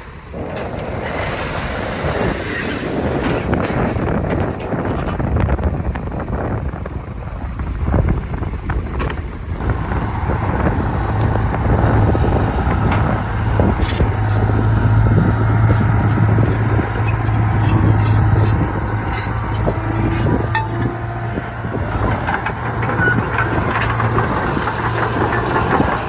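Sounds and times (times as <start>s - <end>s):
bulldozer diesel engine running: 3.8s - 26.0s
sharp metal clanks: 19.2s - 21.4s.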